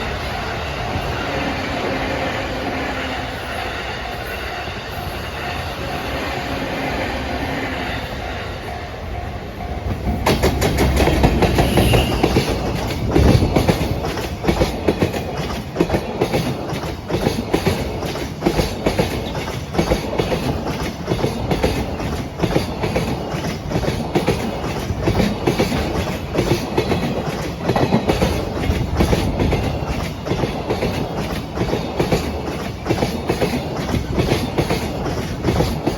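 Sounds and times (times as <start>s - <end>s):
electric locomotive arriving: 0.0s - 35.9s
train wheels clicking over rail joints: 9.6s - 35.9s.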